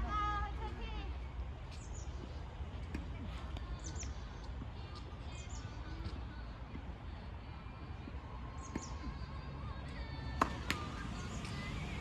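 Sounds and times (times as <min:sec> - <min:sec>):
tennis ball hitting racket: 0:10.4 - 0:11.1.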